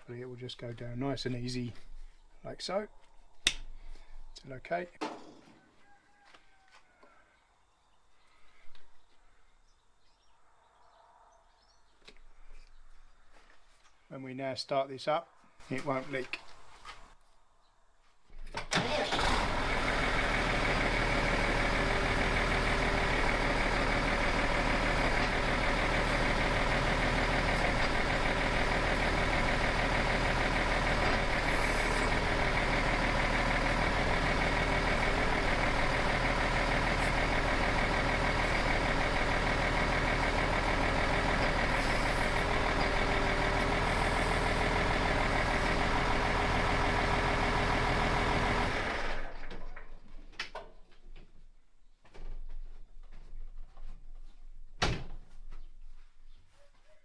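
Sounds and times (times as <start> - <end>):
tractor engine starting and running: 18.5 - 50.6.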